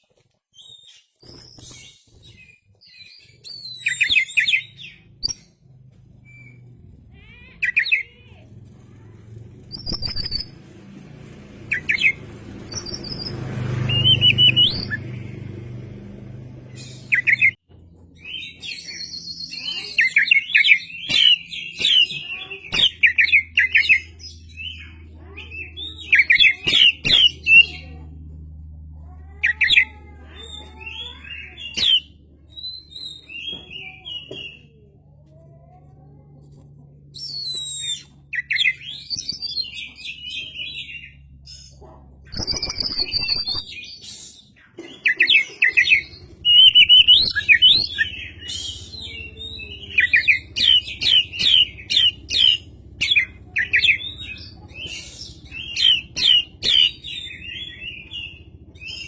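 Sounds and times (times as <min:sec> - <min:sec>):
bird singing whistles: 0:12.7 - 0:15.0, 0:42.3 - 0:44.0, 0:46.5 - 0:48.8.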